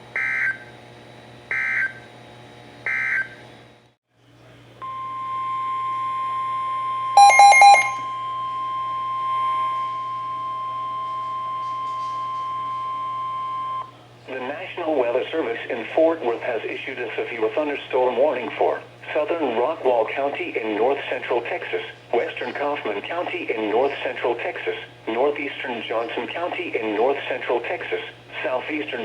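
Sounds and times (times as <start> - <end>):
steady warning alarm tone: 0.2 - 0.6, 1.5 - 2.0, 2.9 - 3.4, 6.6 - 11.6
digital data tone squawks: 7.2 - 8.0
rapid beeps: 7.2 - 8.0.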